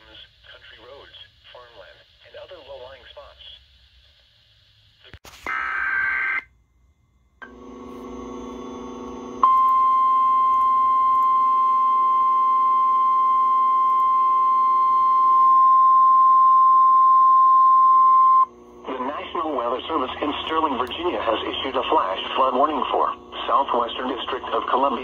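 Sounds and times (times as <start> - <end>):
hum of low steady tones: 6.6 - 25.0.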